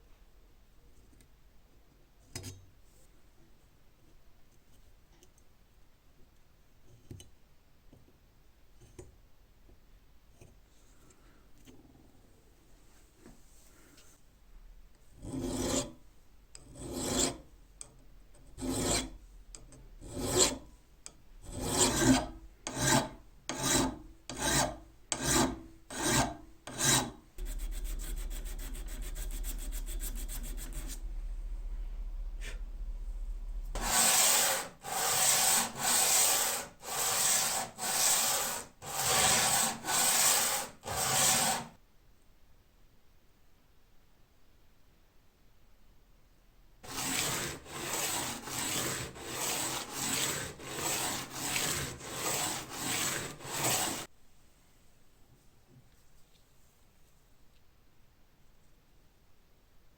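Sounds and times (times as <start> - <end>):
sandpaper rubbing on steel: 22.8 - 31.1, 33.8 - 41.7, 46.8 - 54.1
hand rubbing strokes: 26.8 - 41.6
low hum with rapid ticking: 27.3 - 34.0.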